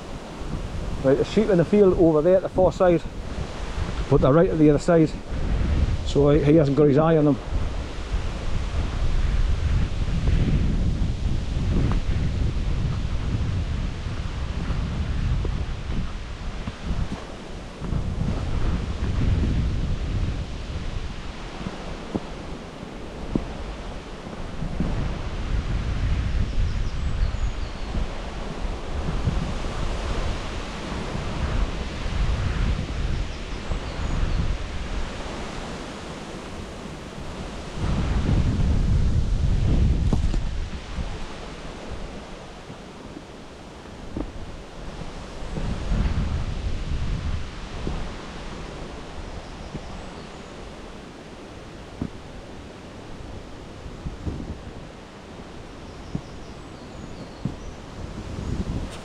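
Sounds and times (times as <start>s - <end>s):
wind buffeting microphone: 0.0s - 59.0s
outdoor rushing hiss: 57.2s - 59.0s.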